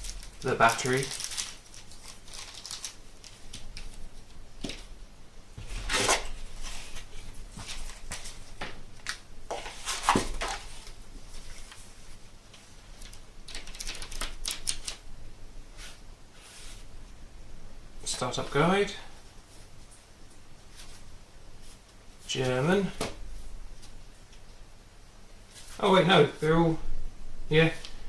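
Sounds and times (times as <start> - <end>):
paper and plastic rustling: 0.0 - 4.9, 5.6 - 15.0.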